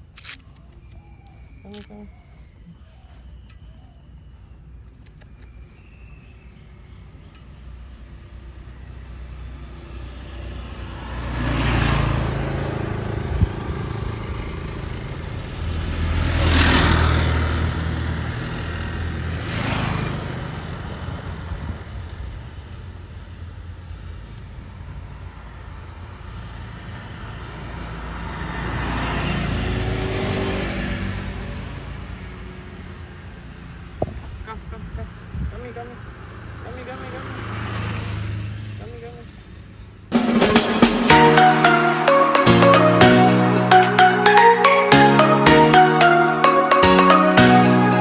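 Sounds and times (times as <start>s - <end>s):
vehicles passing: 0.0s - 48.0s
sharp knock: 40.1s - 41.4s.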